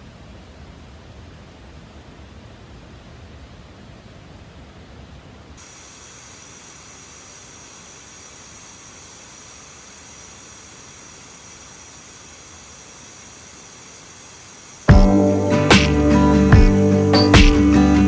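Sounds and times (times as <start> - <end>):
steady hiss: 5.3 - 18.0.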